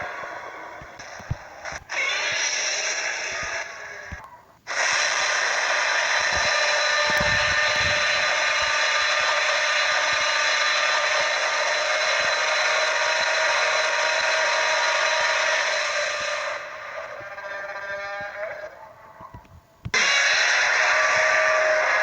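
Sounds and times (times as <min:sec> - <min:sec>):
loud rushing hiss: 0:04.7 - 0:16.8.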